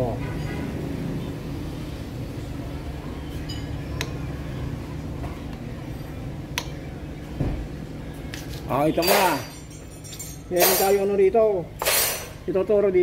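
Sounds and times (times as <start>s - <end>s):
small metal parts clinking: 9.0s - 11.2s.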